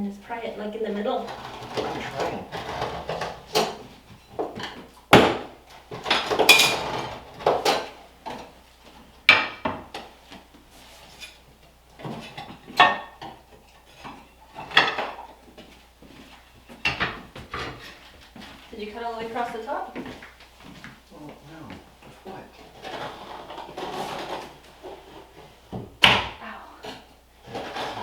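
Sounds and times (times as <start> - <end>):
metal tool scraping ceramic tile: 1.0 - 3.8.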